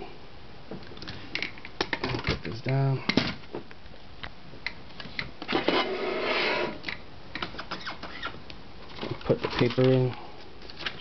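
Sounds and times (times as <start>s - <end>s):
rustling scrape: 5.5s - 6.8s.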